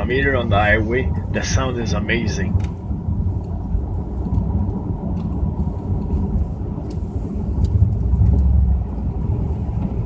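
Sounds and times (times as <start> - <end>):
car engine low rumble: 0.0 - 10.0
road noise inside car: 0.0 - 10.0.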